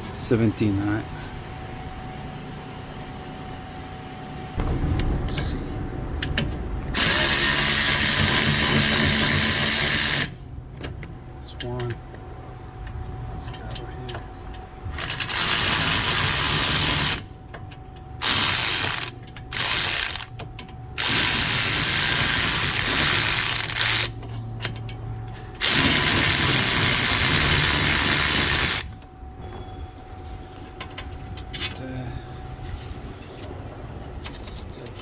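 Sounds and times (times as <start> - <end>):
wrench ratcheting: 7.0 - 10.4, 14.9 - 17.2, 18.2 - 24.8, 25.6 - 28.9.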